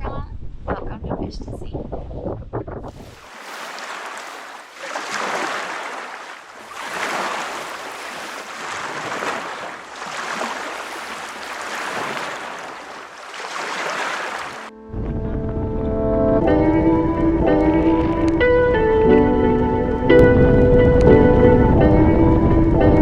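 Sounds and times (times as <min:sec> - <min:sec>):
ocean surf breaking: 0:02.9 - 0:14.7.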